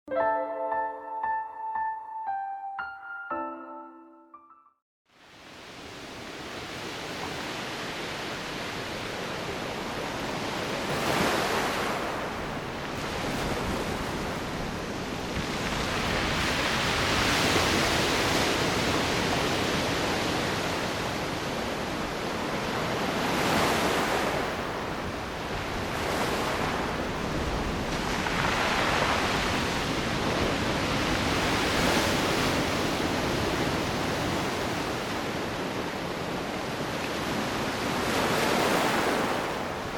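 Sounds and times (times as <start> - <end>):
waves breaking on beach: 5.1 - 39.9
wind on microphone: 8.2 - 39.9.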